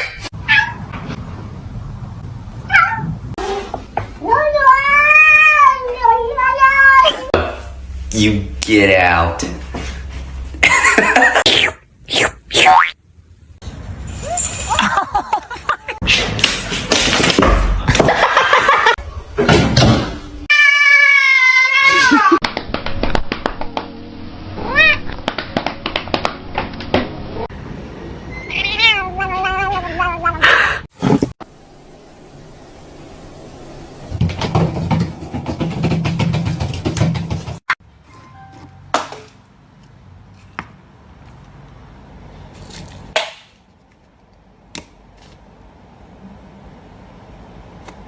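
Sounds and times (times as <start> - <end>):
cat meowing: 0.4 - 0.9, 2.7 - 3.2, 20.5 - 22.4, 24.6 - 25.1, 28.4 - 30.4
scattered clicks and knocks: 34.2 - 37.8.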